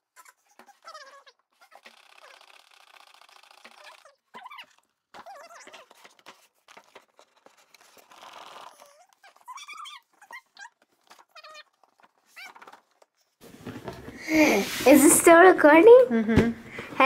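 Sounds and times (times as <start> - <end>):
pet whining: 0.0 - 6.3, 8.0 - 13.1.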